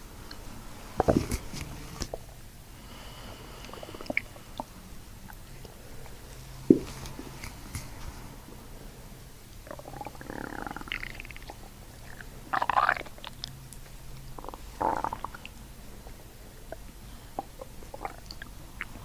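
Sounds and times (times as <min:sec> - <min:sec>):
stomach gurgling: 0:09.6 - 0:13.6, 0:14.3 - 0:19.0.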